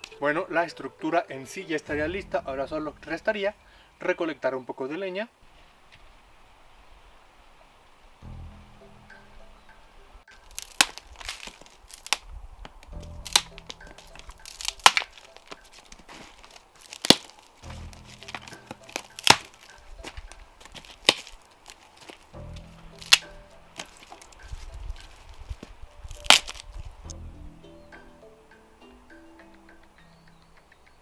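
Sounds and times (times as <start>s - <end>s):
dry sticks snapping: 0.0s - 0.2s, 10.3s - 27.2s
background music with low note: 0.0s - 4.5s, 8.2s - 11.4s, 12.3s - 16.3s, 17.6s - 21.0s, 22.3s - 31.0s.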